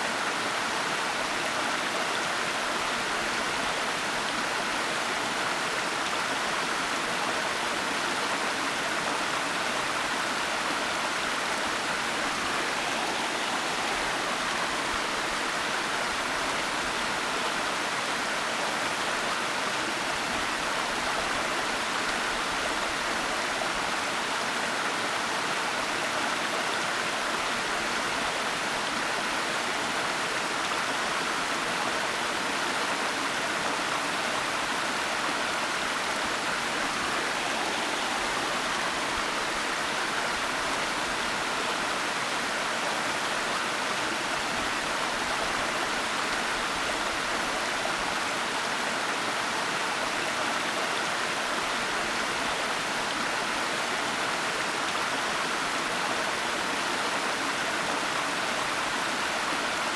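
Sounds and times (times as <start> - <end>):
waterfall rushing: 10.9 - 17.0, 33.8 - 48.1.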